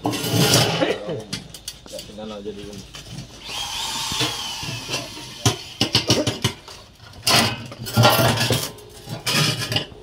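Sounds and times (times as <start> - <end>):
metal scraping clatter: 0.0 - 1.8, 5.8 - 10.0
sheet metal clanking and rattling: 5.8 - 10.0.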